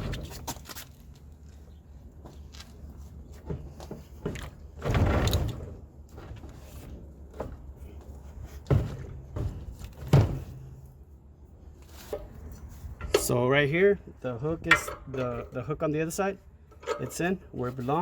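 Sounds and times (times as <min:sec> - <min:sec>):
metal clunks and knocks: 0:03.4 - 0:10.8, 0:13.0 - 0:13.4, 0:14.6 - 0:15.6, 0:16.7 - 0:17.4.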